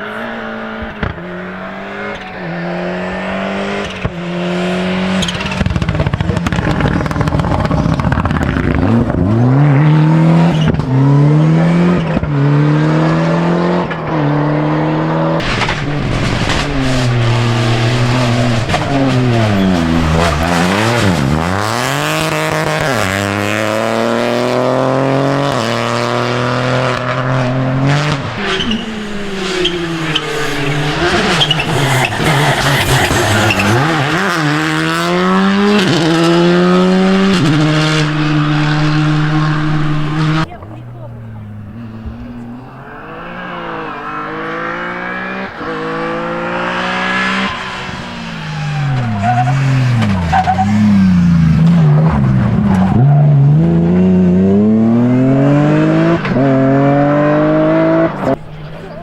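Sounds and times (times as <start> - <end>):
rally car engine revving: 0.0 - 59.0
sharp exhaust cracks: 15.4 - 23.3, 27.0 - 44.6.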